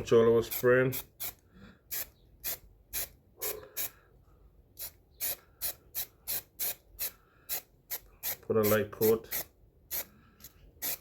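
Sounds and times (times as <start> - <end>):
aerosol can spraying: 4.8 - 10.1, 10.8 - 11.0.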